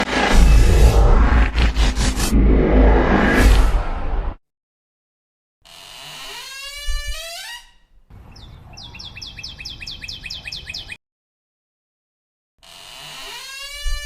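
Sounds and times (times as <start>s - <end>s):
outdoor ambience: 0.0s - 4.4s, 5.8s - 11.0s
door creaking on hinge: 5.7s - 7.8s, 12.6s - 14.0s
bird chirping rapidly: 8.1s - 11.0s.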